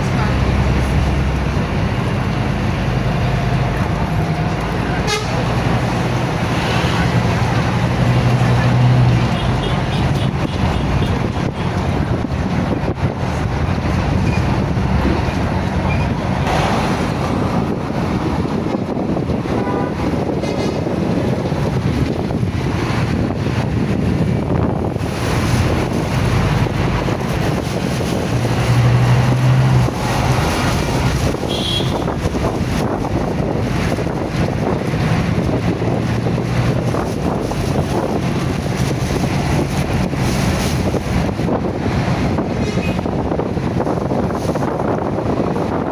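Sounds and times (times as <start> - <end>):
crowd noise: 0.0 - 21.9
street traffic: 0.0 - 45.9
wind buffeting microphone: 0.0 - 45.9.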